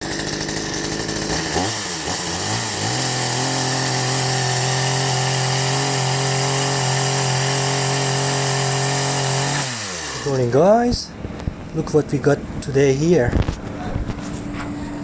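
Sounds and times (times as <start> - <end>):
chainsaw revving: 0.0 - 10.6.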